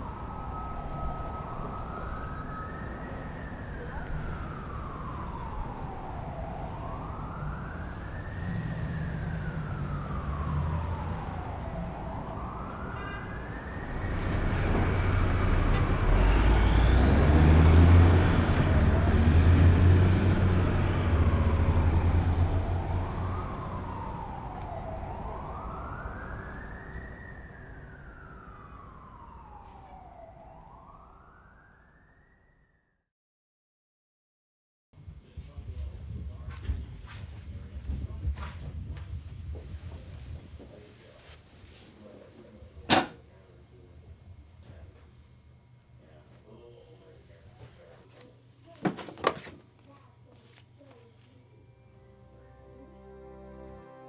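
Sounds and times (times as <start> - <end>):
emergency vehicle siren wailing: 0.0 - 32.9.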